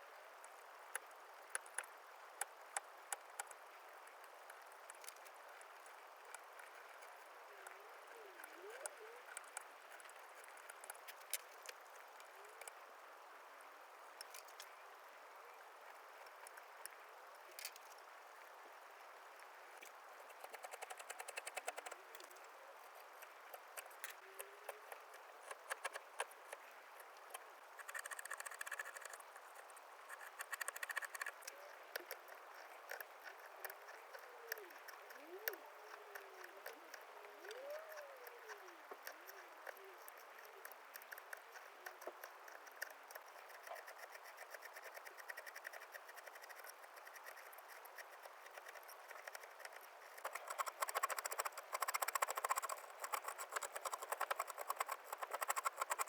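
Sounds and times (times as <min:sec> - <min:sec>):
small clicks of carving tools: 0:00.4 - 0:12.8, 0:14.2 - 0:14.8, 0:16.2 - 0:18.0, 0:19.8 - 0:56.0
carving tools scraping wood: 0:30.1 - 0:31.3, 0:42.5 - 0:56.0.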